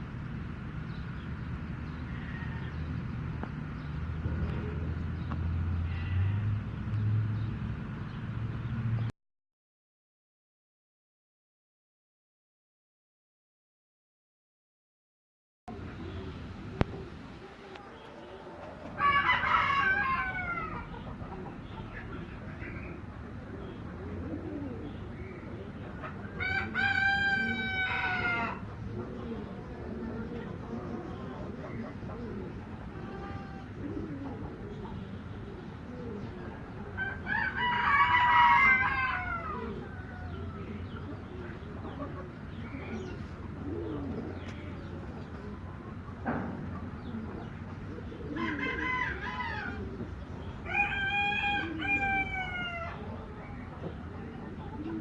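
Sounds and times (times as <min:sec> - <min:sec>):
pigeons cooing softly: 0:00.0 - 0:09.1, 0:15.7 - 0:55.0
rooster crowing: 0:01.9 - 0:03.1, 0:18.2 - 0:21.0, 0:26.4 - 0:28.7, 0:37.0 - 0:40.9, 0:48.4 - 0:49.9, 0:50.6 - 0:53.1.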